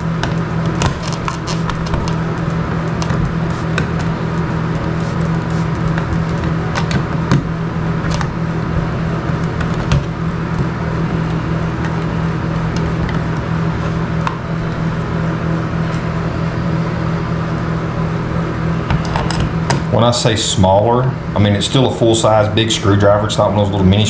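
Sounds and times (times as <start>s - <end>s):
loud low hum: 0.0s - 24.0s.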